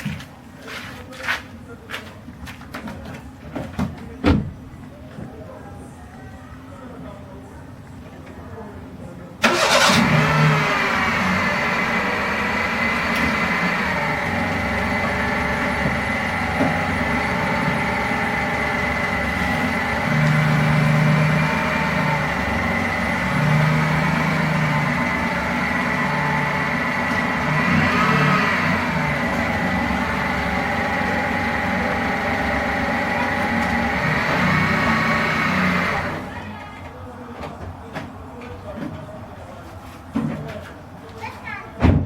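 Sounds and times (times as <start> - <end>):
road noise: 7.7 - 41.9
car engine running: 9.4 - 36.3.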